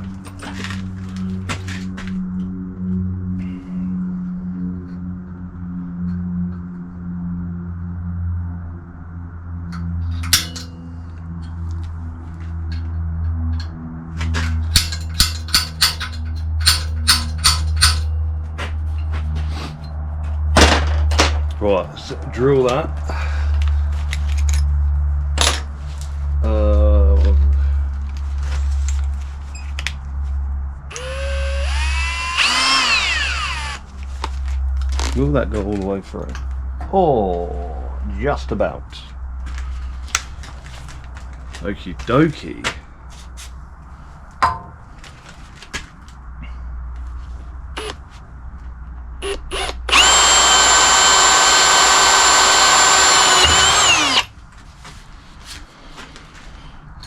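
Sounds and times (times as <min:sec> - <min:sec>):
low hum: 0:00.0 - 0:40.0, 0:46.1 - 0:54.7
electric drill drilling into steel: 0:30.9 - 0:33.8, 0:47.8 - 0:48.0, 0:49.2 - 0:54.3.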